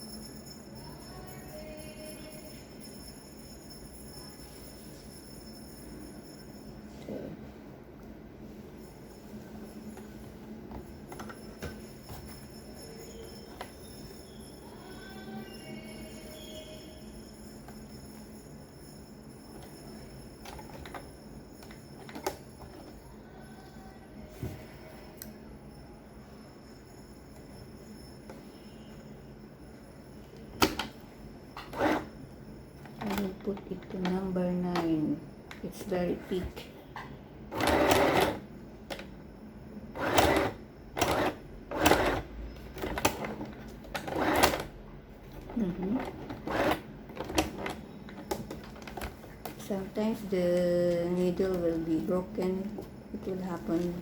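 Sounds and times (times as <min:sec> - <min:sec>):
steady low hum: 0:00.0 - 0:54.0
sewing machine stitching: 0:31.6 - 0:32.1, 0:37.5 - 0:38.4, 0:39.9 - 0:44.7, 0:45.6 - 0:47.8
handling clicks and knocks: 0:45.3 - 0:49.6.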